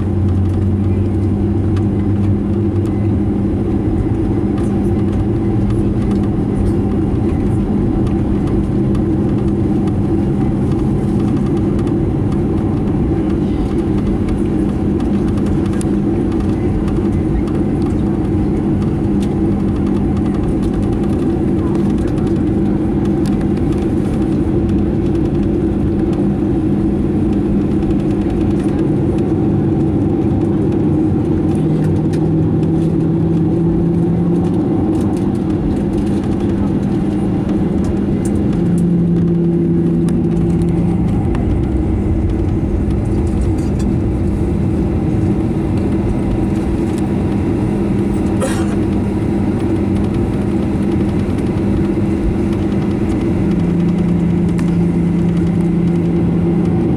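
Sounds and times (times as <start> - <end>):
aircraft cabin drone: 0.0 - 56.9.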